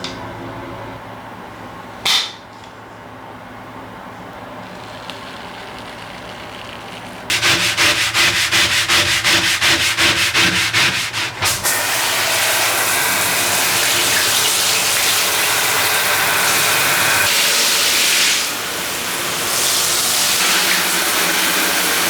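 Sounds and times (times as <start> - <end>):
rapid scrubbing: 5.1 - 11.6.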